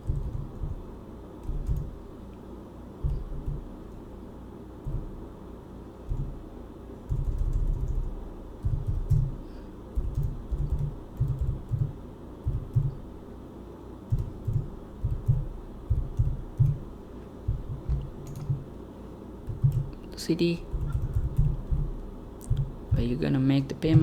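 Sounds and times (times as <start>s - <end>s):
typing on a computer keyboard: 0.0s - 2.0s, 3.0s - 4.0s, 6.0s - 6.4s, 7.0s - 13.1s, 14.1s - 16.9s, 17.5s - 18.7s, 19.4s - 23.3s.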